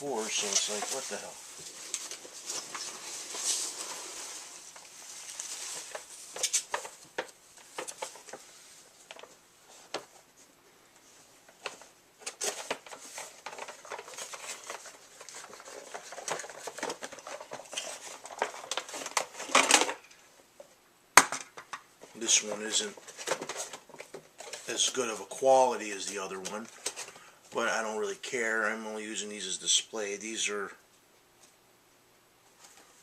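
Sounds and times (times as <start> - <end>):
packaging rustling and crinkling: 0.0 - 10.3, 11.4 - 20.2, 21.6 - 27.3.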